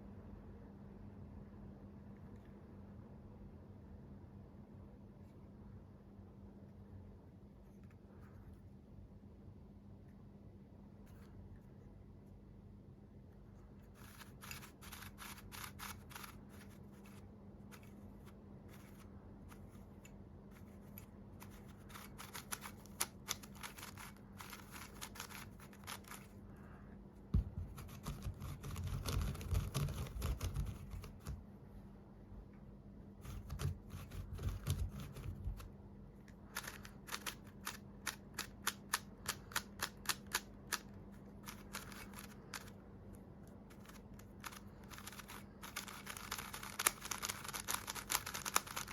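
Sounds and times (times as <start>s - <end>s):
puzzle cube clicking: 20.8s - 26.4s, 36.3s - 42.8s, 43.7s - 48.9s
dull handling thumps: 27.3s - 28.0s.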